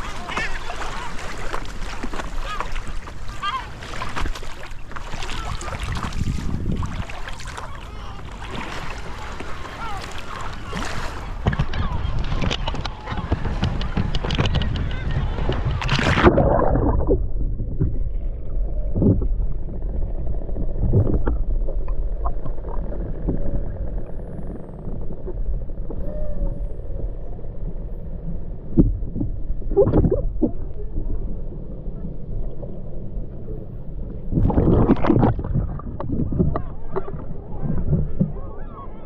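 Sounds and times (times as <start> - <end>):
water splash: 0.0 - 17.3, 34.3 - 37.2
water swirling: 0.0 - 26.1, 33.8 - 38.8
low underwater rumble: 0.0 - 39.0.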